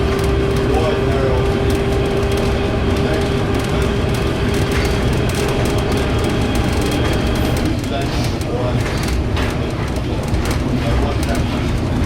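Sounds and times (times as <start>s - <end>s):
electric train rumbling: 0.0s - 12.0s
running gear rattling and clicking: 0.1s - 12.0s.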